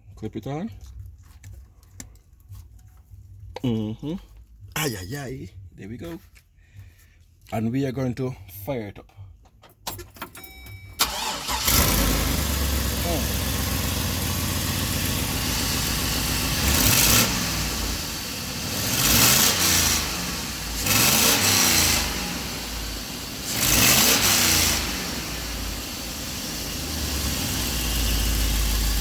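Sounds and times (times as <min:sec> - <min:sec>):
engine idling and revving: 0:11.0 - 0:29.0.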